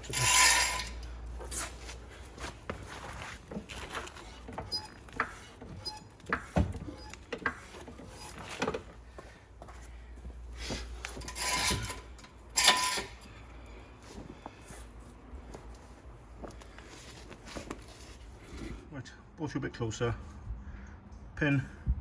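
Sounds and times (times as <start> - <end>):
metal scraping: 0.0 - 1.9, 11.2 - 13.2.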